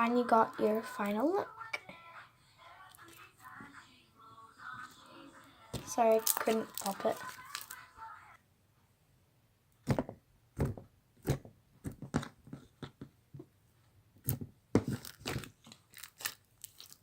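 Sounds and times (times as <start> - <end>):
bead slime crunching: 5.8 - 7.8, 14.2 - 17.0.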